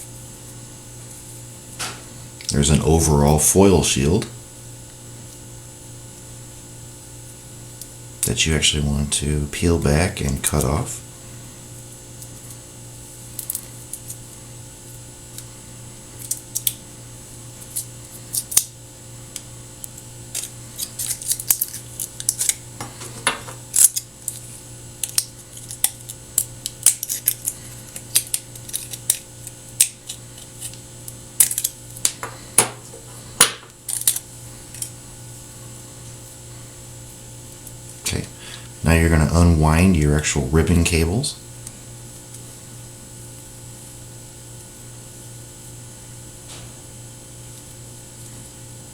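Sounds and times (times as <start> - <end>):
scissors snipping foil: 20.3 - 22.6, 23.7 - 31.8, 33.9 - 34.9.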